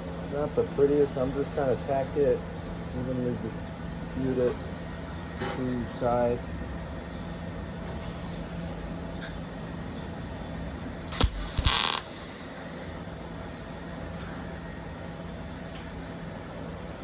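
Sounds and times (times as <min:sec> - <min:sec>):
welder click: 0:11.1 - 0:13.0
welding arc sizzling: 0:11.1 - 0:13.0.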